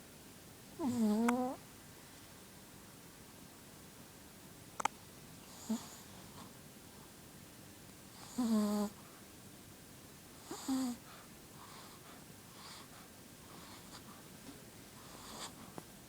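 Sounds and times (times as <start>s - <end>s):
dog snoring: 0.8s - 1.6s, 5.5s - 6.1s, 8.2s - 9.0s, 10.4s - 12.9s, 15.0s - 15.6s.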